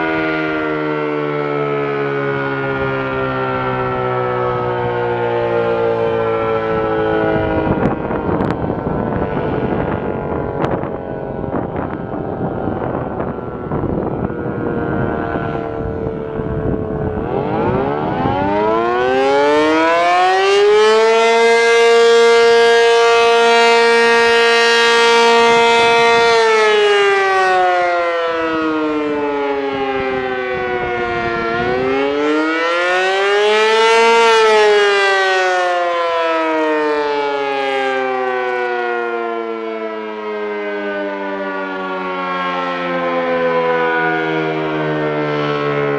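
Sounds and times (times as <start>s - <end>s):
warning siren rising and falling wail: 0.0s - 45.9s
wind buffeting microphone: 2.6s - 20.0s, 20.6s - 35.1s.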